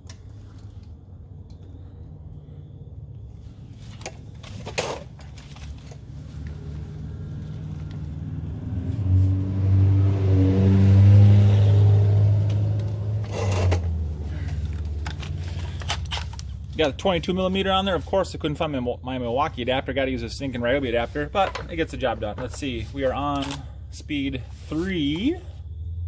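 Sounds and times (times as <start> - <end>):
vehicle passing by: 6.0 - 16.0.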